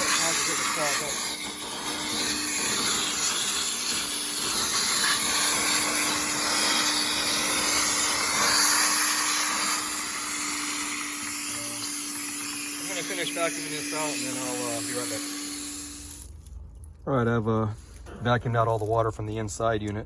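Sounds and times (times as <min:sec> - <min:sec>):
hose sucking water hiss: 0:00.0 - 0:10.0
wet vac motor hum: 0:00.0 - 0:16.3.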